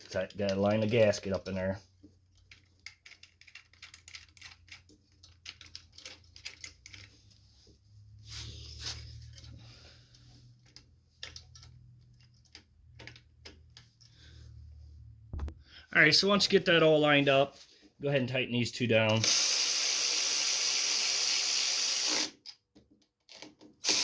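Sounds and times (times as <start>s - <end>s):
small parts clicking and tapping: 0.0s - 7.4s, 10.1s - 14.2s, 19.1s - 24.0s.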